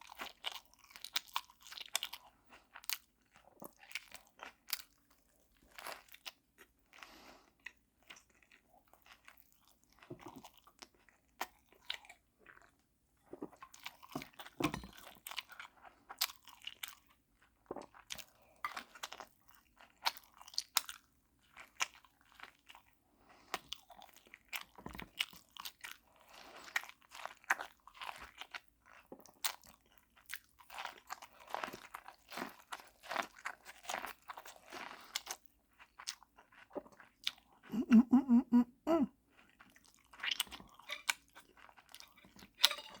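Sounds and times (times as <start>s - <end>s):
person chewing food: 0.0s - 43.0s
wet mouth clicks: 37.7s - 39.1s.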